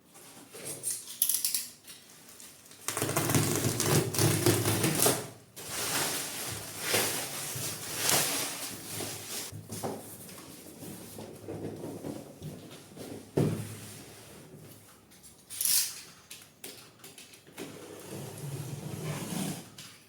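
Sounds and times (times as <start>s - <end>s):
packaging rustling: 2.3s - 9.6s.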